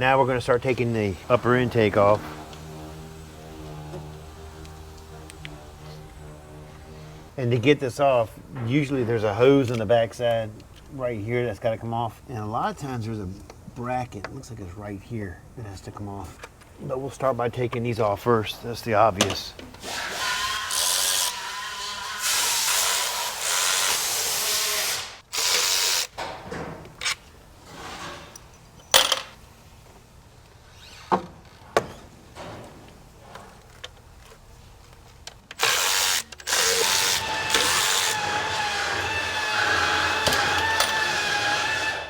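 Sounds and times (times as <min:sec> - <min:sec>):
power tool whining: 0:00.0 - 0:07.4, 0:35.5 - 0:42.0
tools and metal parts clinking: 0:26.2 - 0:29.4, 0:40.2 - 0:41.2.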